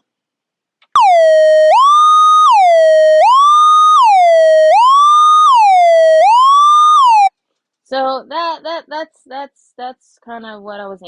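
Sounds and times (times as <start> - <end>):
synthesizer siren tone: 1.0 - 7.3.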